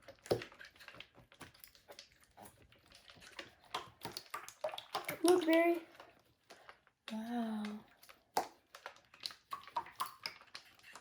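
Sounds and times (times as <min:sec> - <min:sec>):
slime squelching and clicking: 0:00.0 - 0:11.0.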